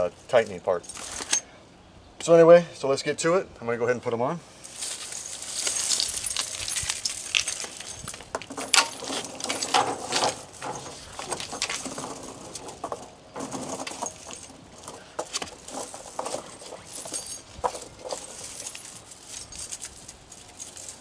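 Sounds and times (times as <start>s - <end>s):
steel tire chains clinking: 4.6s - 21.0s.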